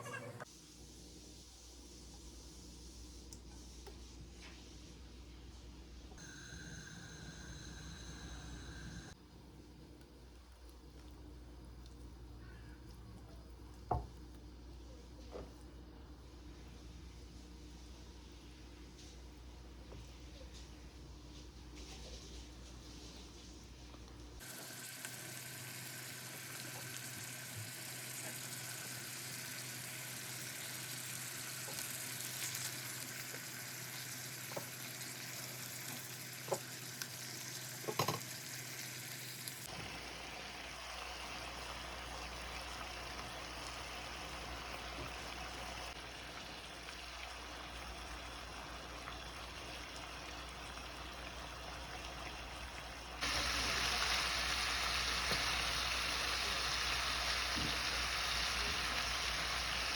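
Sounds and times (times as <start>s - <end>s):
meat sizzling in a pan: 24.4s - 59.9s.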